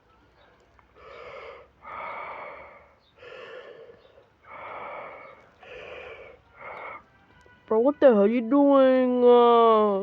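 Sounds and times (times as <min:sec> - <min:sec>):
person breathing heavily: 0:00.9 - 0:07.1.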